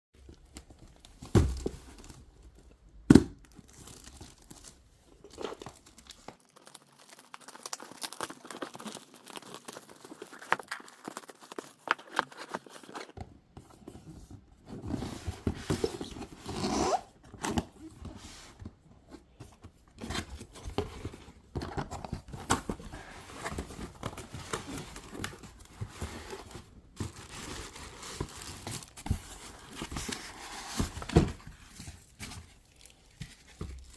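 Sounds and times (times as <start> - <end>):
packaging tearing and crinkling: 3.6 - 13.2.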